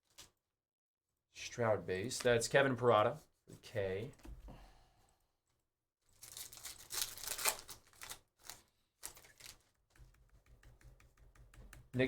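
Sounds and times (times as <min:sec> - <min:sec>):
trading cards and wrappers rustling: 0:06.1 - 0:10.1.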